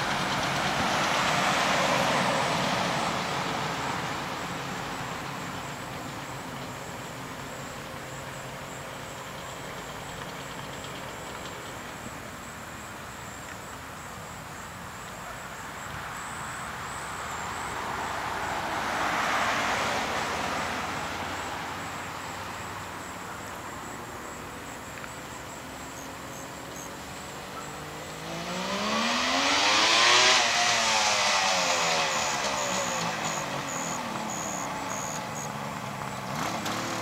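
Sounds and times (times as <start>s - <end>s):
motorcycle engine passing by: 26.3s - 37.0s.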